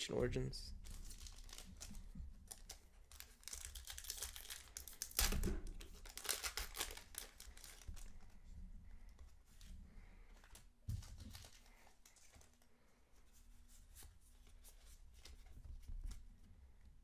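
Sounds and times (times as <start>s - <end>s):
foil wrapper tearing and crinkling: 0.8s - 8.2s.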